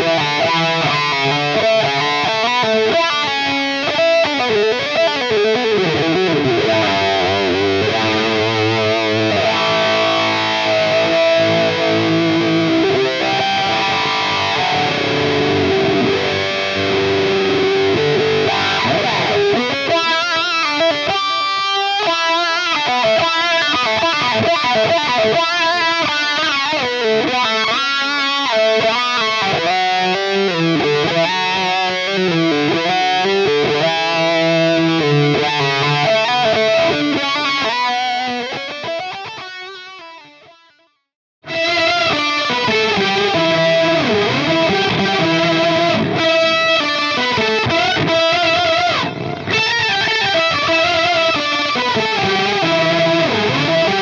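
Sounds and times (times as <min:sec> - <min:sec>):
distorted lead electric guitar: 0:00.0 - 0:54.0.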